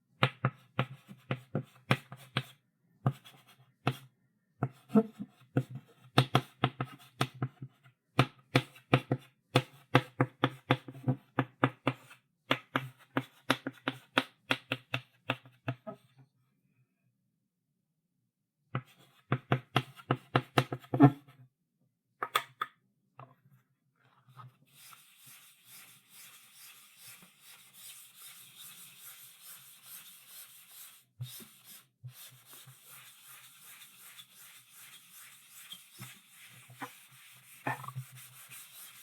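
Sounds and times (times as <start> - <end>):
chalk tapping on blackboard: 0.2 - 4.0, 5.6 - 7.6, 8.5 - 15.8, 24.7 - 39.0
chalk scraping across board: 24.7 - 39.0.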